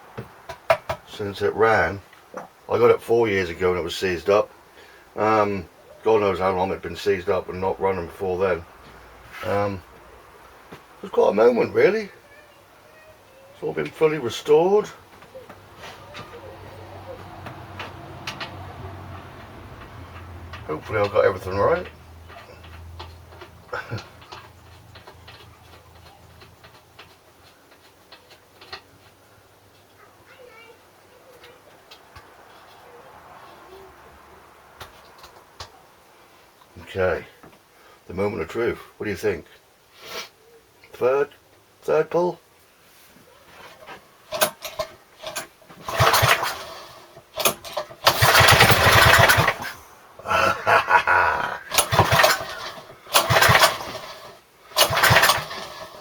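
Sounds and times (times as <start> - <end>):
engine cranking pull: 15.8 - 27.1, 43.7 - 56.0.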